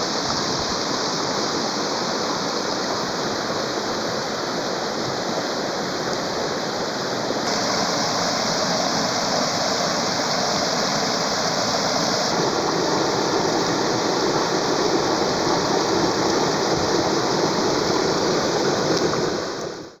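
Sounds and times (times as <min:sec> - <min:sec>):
running water rushing: 0:00.0 - 0:20.0.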